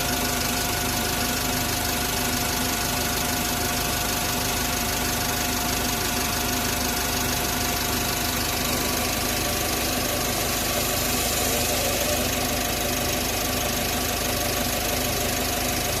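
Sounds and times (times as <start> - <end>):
diesel engine running: 0.0 - 16.0
turbocharger howl: 7.9 - 16.0.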